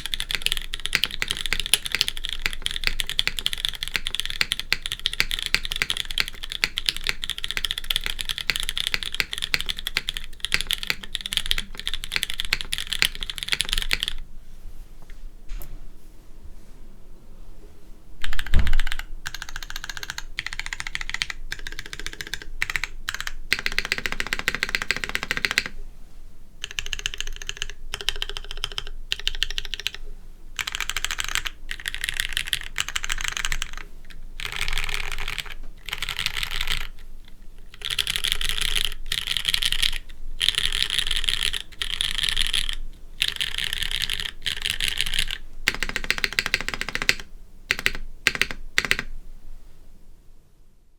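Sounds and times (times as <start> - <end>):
mechanical keyboard typing: 0.0 - 14.2, 18.2 - 25.8, 26.6 - 30.0, 30.6 - 49.1
heavy deep thud: 18.5 - 18.9.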